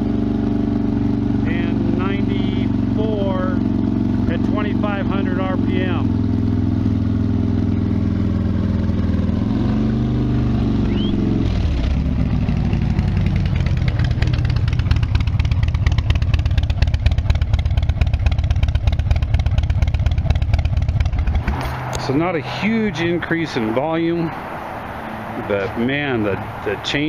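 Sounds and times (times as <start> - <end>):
motorcycle engine revving and idling: 0.0 - 27.0.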